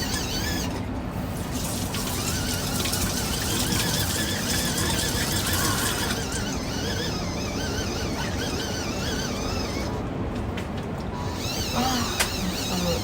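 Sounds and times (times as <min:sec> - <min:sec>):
washing machine rushing: 0:00.0 - 0:13.0
wavering high squeal: 0:02.2 - 0:10.1.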